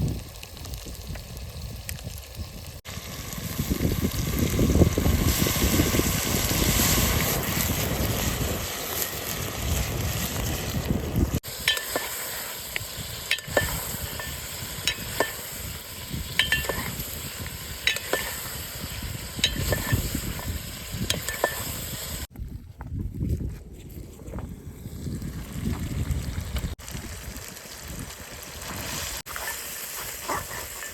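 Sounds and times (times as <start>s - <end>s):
food sizzling in a metal pan: 0.0s - 22.3s, 26.2s - 30.9s
metal spoon scraping a pan: 11.6s - 12.6s, 13.3s - 15.6s, 16.2s - 17.1s, 17.8s - 18.6s, 19.4s - 22.0s.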